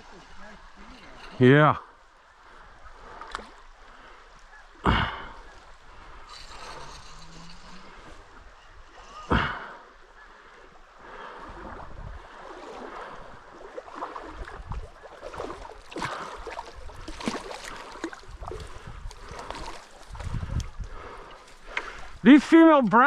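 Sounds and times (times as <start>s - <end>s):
creek water running and splashing: 0.0s - 23.0s
low wind rumble: 4.8s - 14.9s, 18.1s - 22.5s.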